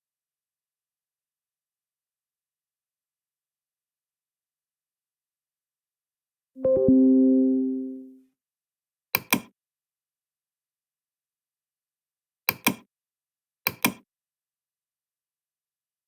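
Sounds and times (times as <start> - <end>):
paired sharp clicks: 9.2 - 9.5, 13.7 - 14.0.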